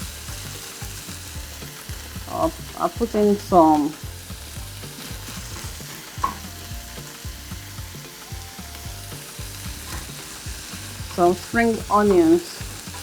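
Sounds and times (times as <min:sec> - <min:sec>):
vegetables sizzling in frying pan: 0:00.0 - 0:13.0
utensil scraping and knocking pan: 0:04.8 - 0:06.6.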